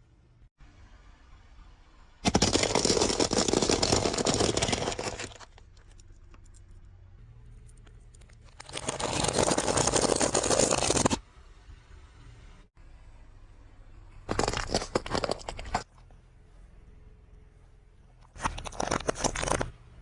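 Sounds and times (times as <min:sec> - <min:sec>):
reversed crackling crunching: 0:02.2 - 0:11.2, 0:14.2 - 0:16.1, 0:18.2 - 0:20.0.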